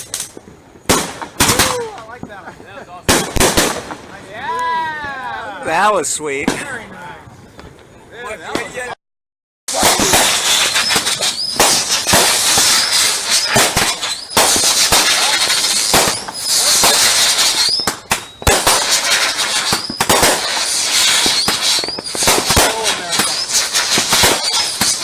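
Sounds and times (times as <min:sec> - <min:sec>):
fireworks crackling and banging: 0:00.0 - 0:09.0, 0:09.7 - 0:25.0
firework rising whistles: 0:09.7 - 0:25.0.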